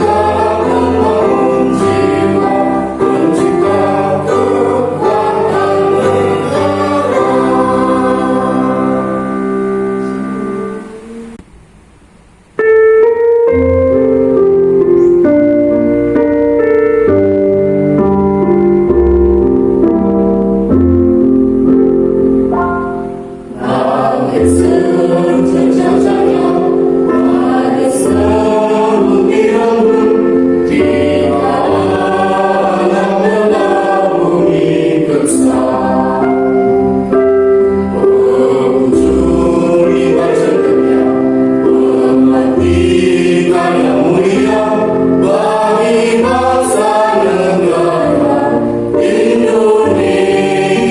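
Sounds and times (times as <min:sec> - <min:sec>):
children's choir singing: 0:00.0 - 0:11.4, 0:22.6 - 0:50.9
keyboard accompaniment: 0:00.0 - 0:50.9.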